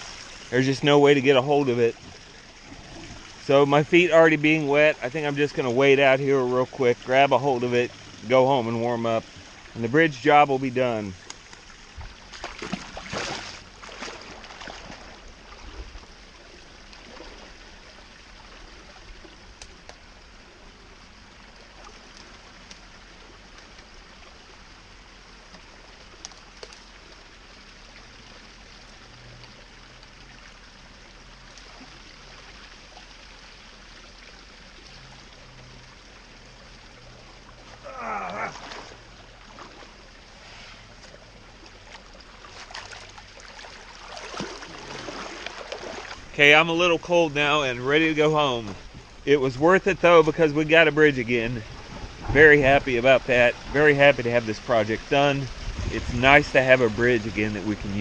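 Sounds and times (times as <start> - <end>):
creek water running: 0.0 - 58.0
splashing in water: 11.1 - 18.9, 37.5 - 49.3.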